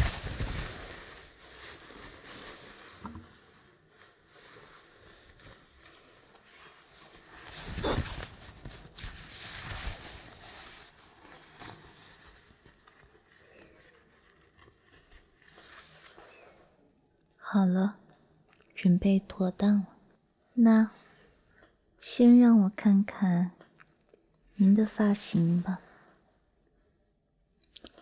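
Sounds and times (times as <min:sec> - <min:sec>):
cloth rustling: 0:00.0 - 0:16.7.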